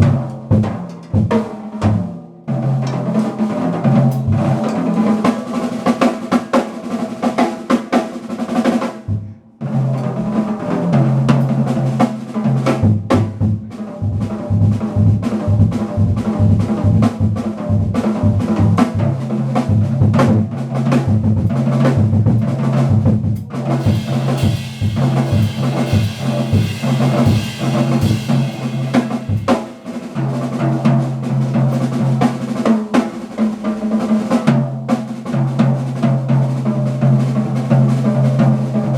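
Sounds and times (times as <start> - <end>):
jazz drum kit: 0.0 - 38.9.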